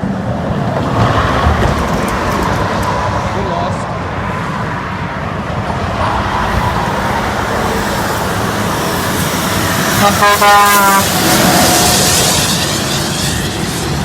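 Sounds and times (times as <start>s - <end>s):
highway traffic passing: 0.0s - 14.0s
truck passing: 0.0s - 14.0s
truck horn blast: 9.9s - 12.6s.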